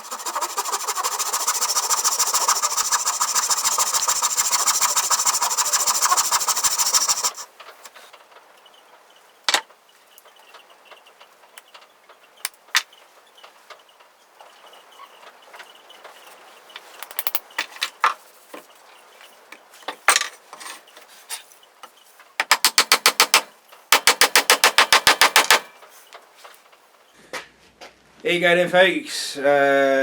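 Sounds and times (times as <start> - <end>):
power tool running with rough pulsing: 0.0 - 7.5.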